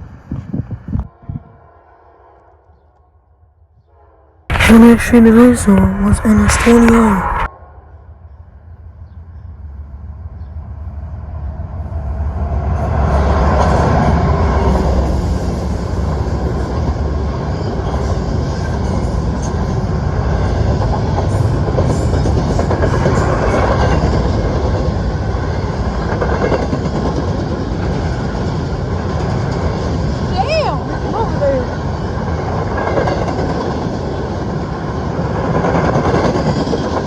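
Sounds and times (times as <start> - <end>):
freight train passing: 3.5 - 37.0
rattle of train cars: 8.9 - 37.0.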